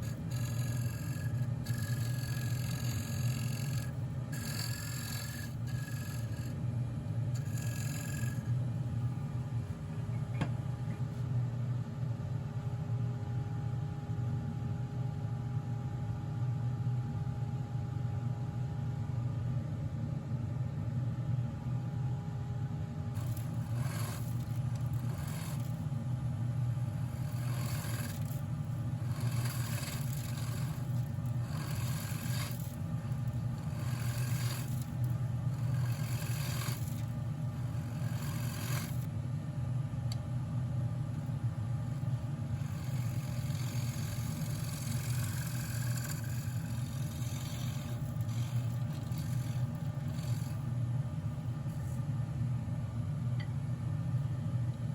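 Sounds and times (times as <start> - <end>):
scraping spinning wood: 0.0 - 6.6, 7.4 - 8.6, 23.2 - 25.9, 26.6 - 39.1, 42.6 - 50.7
lathe motor hum: 0.0 - 9.9, 23.2 - 39.1, 41.2 - 52.0.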